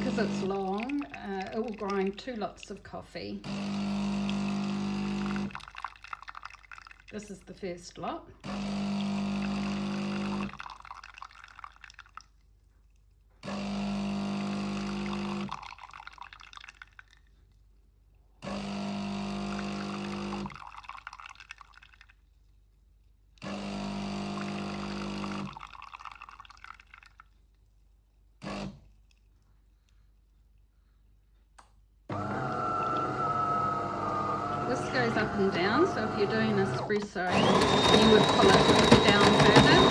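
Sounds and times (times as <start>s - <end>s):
espresso machine pump humming: 0.0s - 2.1s, 3.5s - 5.6s, 8.4s - 10.7s, 13.5s - 15.8s, 18.4s - 20.7s, 23.4s - 25.7s, 32.1s - 39.9s
coffee dripping into mug: 0.0s - 2.4s, 5.2s - 7.1s, 9.4s - 12.4s, 14.6s - 17.2s, 19.5s - 22.2s, 24.4s - 27.3s.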